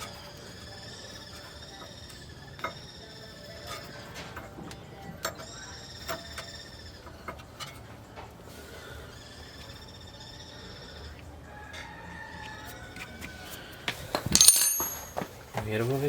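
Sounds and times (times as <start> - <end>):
tools clicking and knocking: 14.1 - 15.3.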